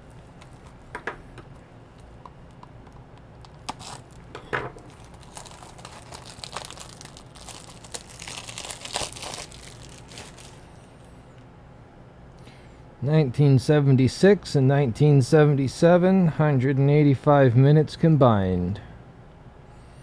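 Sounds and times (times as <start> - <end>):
plastic wrapping crinkling and tearing: 0.0 - 0.9, 3.4 - 10.8.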